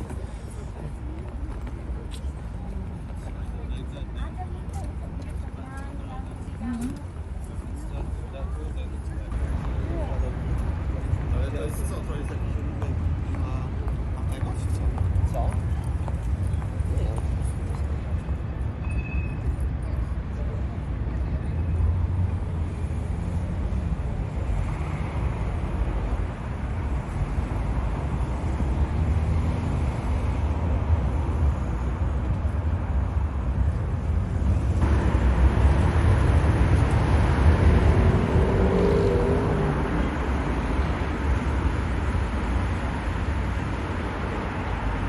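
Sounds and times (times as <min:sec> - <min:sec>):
city street traffic rumble: 0:00.0 - 0:45.0.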